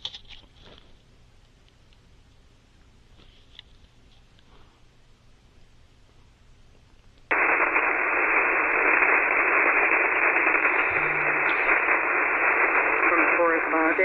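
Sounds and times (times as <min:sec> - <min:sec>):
radio static hiss: 0:07.3 - 0:14.0.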